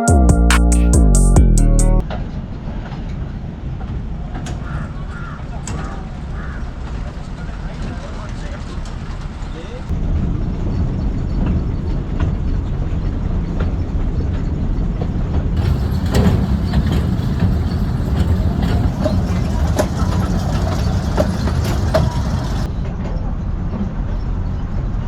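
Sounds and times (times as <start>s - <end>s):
mini train rumbling on track: 2.1s - 23.7s.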